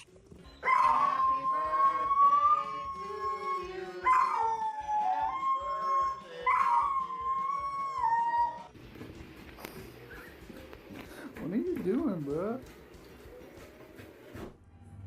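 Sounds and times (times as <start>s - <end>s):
dog howling: 0.6s - 8.7s.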